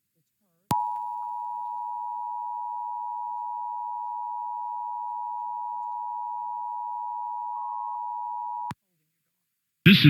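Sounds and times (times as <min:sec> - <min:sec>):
two-tone alert tone: 0:00.7 - 0:08.7.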